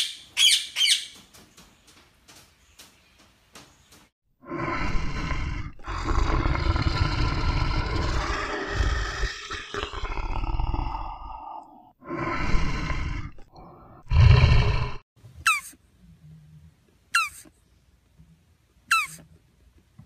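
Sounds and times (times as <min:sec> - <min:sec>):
big cat roaring: 0:04.4 - 0:15.0.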